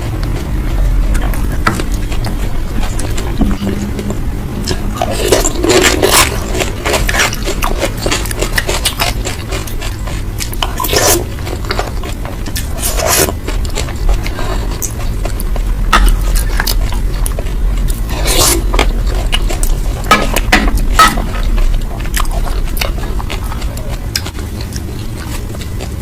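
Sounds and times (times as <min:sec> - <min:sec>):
low rumble: 0:00.0 - 0:07.8
chewing and crunching food: 0:00.0 - 0:26.0.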